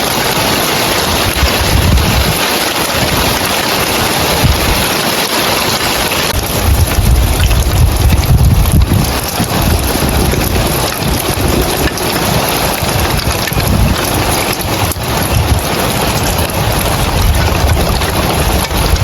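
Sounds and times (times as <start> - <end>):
rain on roof tiles: 0.0 - 19.0
low rumble: 6.4 - 12.1.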